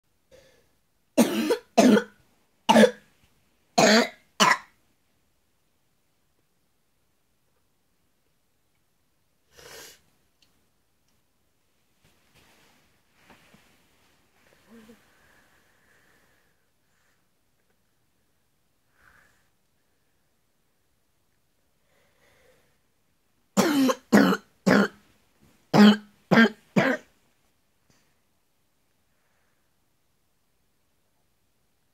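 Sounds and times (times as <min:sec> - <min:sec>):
man coughing: 0:01.2 - 0:02.1
person coughing: 0:01.2 - 0:02.1, 0:02.7 - 0:03.0, 0:03.8 - 0:04.7, 0:23.6 - 0:24.9, 0:25.8 - 0:27.1.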